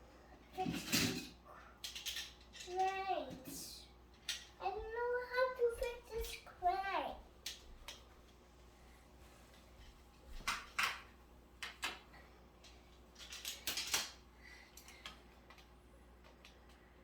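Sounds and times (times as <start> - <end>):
toy pieces clicking and clattering: 0.7 - 3.0, 12.6 - 15.7.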